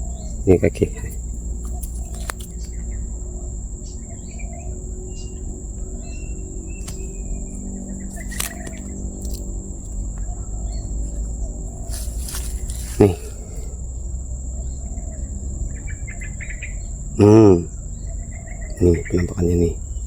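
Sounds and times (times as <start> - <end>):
faint bird chirps: 0.0 - 20.0
high-pitched insect drone: 0.0 - 20.0
sharp clicks: 1.0 - 2.8, 8.1 - 9.5.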